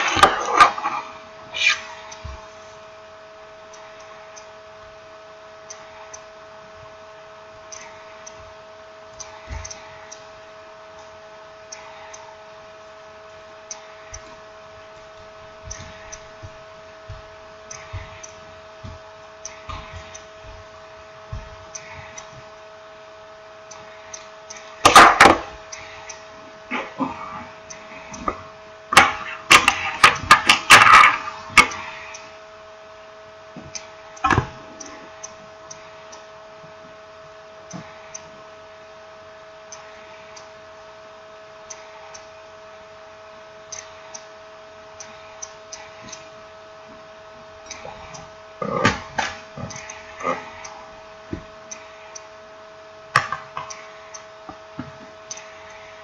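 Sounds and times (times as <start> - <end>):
steady electrical hum: 0.0 - 56.0.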